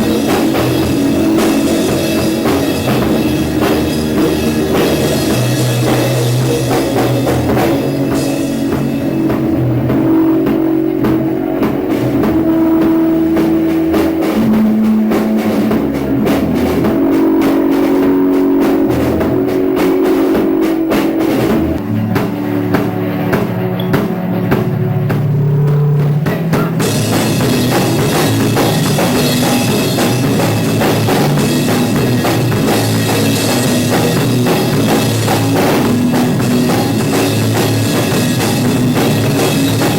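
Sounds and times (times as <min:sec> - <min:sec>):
cymbals crashing: 0:00.0 - 0:21.9, 0:26.8 - 0:39.9
live rock band playing: 0:00.0 - 0:39.9.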